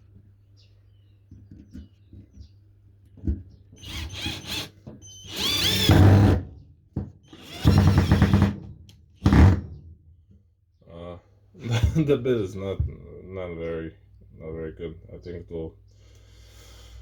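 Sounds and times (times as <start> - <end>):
cordless screwdriver motor whine: 3.8 - 6.0.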